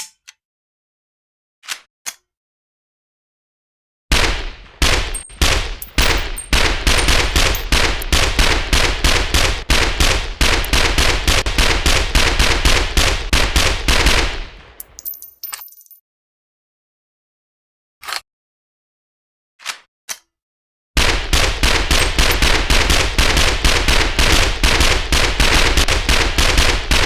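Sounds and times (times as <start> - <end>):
submachine gun firing: 4.1 - 14.8, 21.0 - 27.0.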